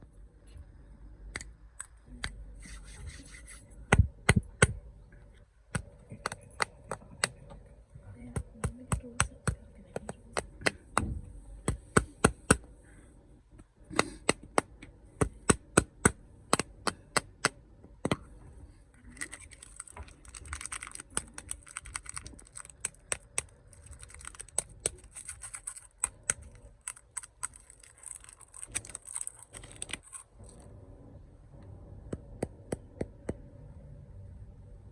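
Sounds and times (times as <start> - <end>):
taps and clicks on packaging: 5.8 - 7.4, 13.9 - 18.2
wrapper crinkling: 19.0 - 30.6.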